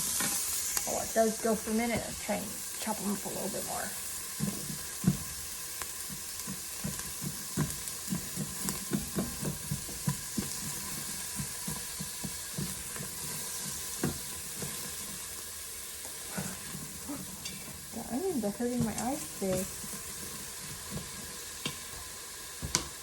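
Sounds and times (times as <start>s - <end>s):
onions sizzling in oil: 0.0s - 23.0s
utensil scraping a pot: 3.2s - 15.4s, 16.0s - 22.0s.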